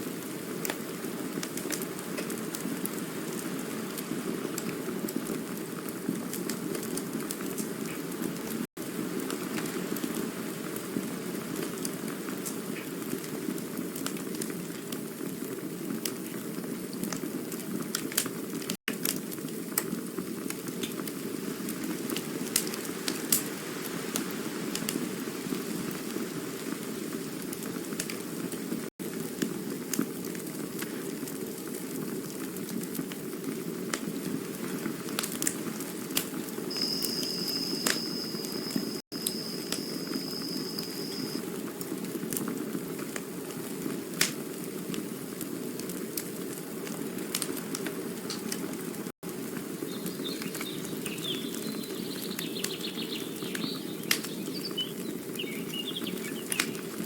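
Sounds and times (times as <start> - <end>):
campfire crackling and popping: 0.0 - 57.0
high whistle: 36.7 - 41.4.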